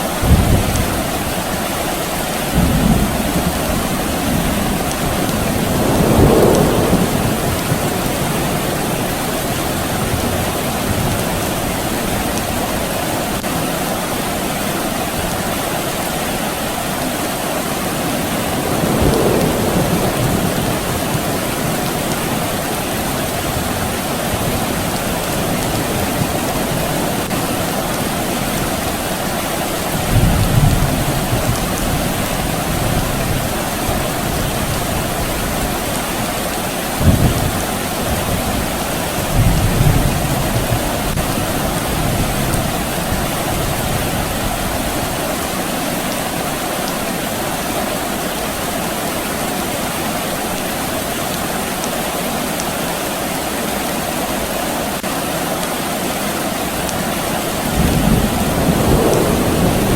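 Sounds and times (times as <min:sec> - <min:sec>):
steady soft rain: 0:00.0 - 0:59.9
distant thunder rumbling: 0:02.5 - 0:11.9, 0:18.0 - 0:29.2, 0:29.8 - 0:45.2, 0:57.5 - 0:59.9.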